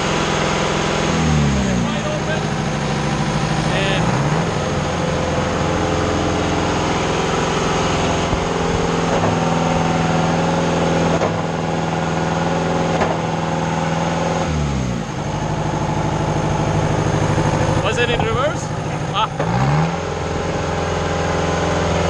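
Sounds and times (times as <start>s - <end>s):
concrete pump engine running: 0.0s - 22.0s.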